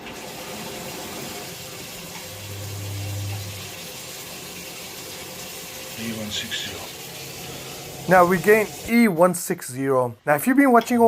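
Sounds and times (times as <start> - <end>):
water running from tap: 0.0 - 9.2
low hum: 2.1 - 3.9.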